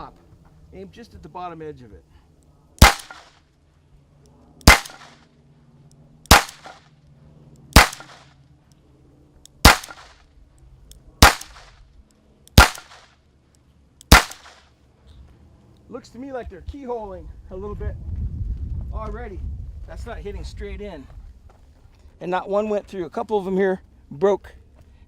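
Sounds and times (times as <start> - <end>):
handgun shots with echo: 2.8 - 3.4, 4.6 - 5.2, 6.3 - 6.9, 7.8 - 8.3, 9.6 - 10.2, 11.2 - 11.8, 12.5 - 13.1, 14.1 - 14.7.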